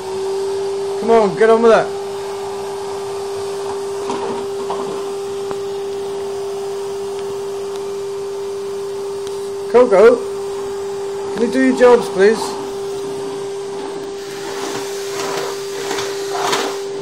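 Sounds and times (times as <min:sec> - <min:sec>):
vacuum cleaner running: 0:00.0 - 0:17.0.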